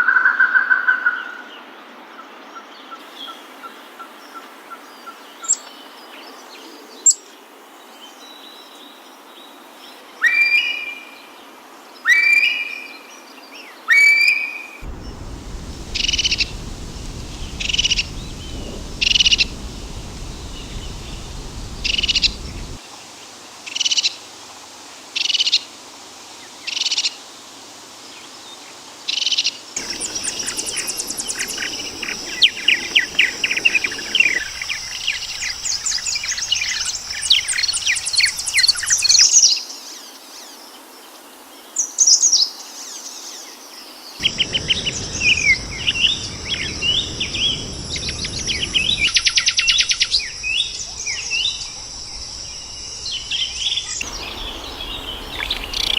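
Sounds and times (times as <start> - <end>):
birds chirping and trilling: 29.8 - 38.8, 48.2 - 55.9.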